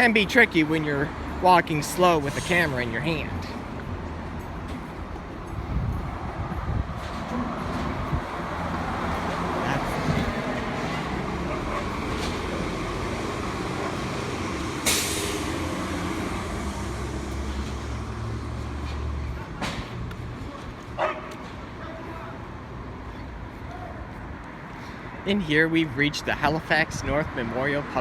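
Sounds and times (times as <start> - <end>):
city street traffic: 0.0 - 28.0
heavy vehicle engine running: 1.1 - 19.4
short sharp hiss: 14.8 - 15.5.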